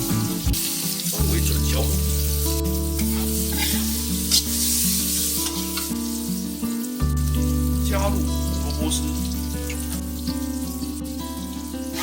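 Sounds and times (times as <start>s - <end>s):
mushrooms sizzling in oil: 0.0s - 12.0s
soft background music: 0.0s - 12.0s
spatula scraping a pan: 3.0s - 6.0s.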